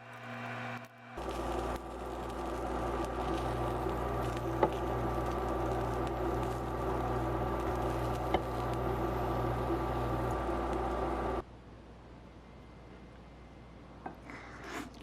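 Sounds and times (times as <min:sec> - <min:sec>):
electrical appliance hum: 0:00.0 - 0:11.4.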